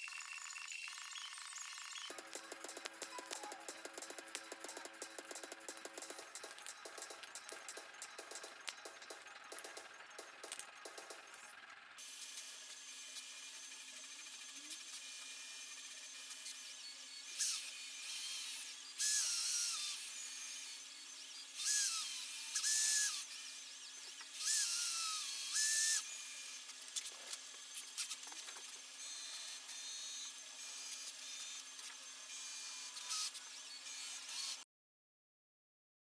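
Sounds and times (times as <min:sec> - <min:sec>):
small power tool running: 0:00.0 - 0:34.6
clicks: 0:02.1 - 0:11.5.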